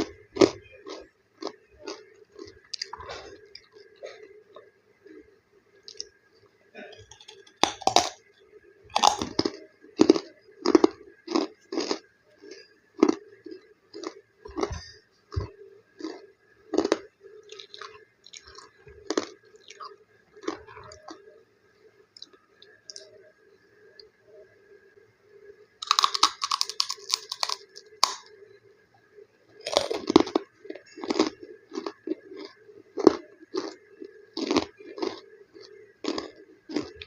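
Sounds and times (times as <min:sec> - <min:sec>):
crunchy snack chewing: 0:07.0 - 0:08.2, 0:08.9 - 0:21.2, 0:25.8 - 0:28.3, 0:29.6 - 0:37.0.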